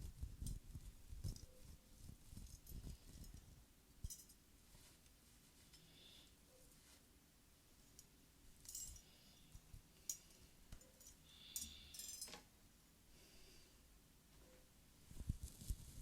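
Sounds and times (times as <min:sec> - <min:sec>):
crinkly rustle: 0:15.0 - 0:16.0.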